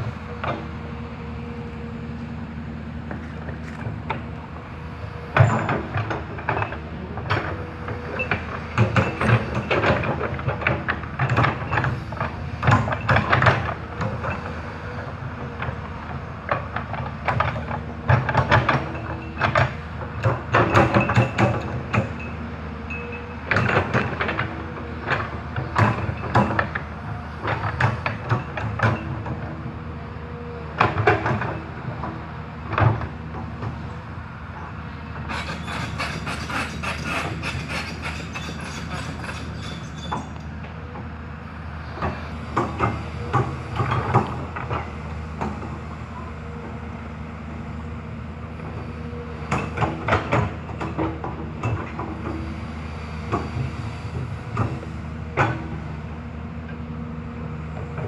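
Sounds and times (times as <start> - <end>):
excavator diesel engine running: 0.0 - 58.0
metallic clanks and knocks: 5.2 - 14.5.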